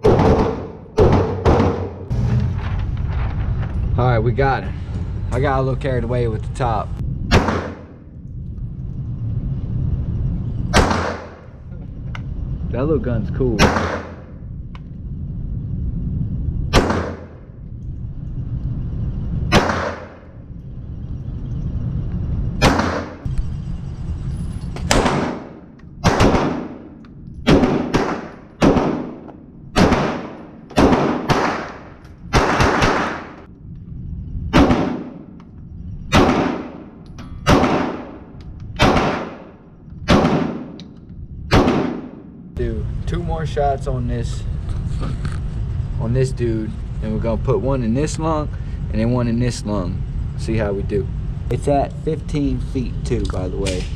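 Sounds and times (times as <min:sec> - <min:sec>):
low rumble: 0:00.0 - 0:53.9
handgun shots with echo: 0:41.5 - 0:42.2.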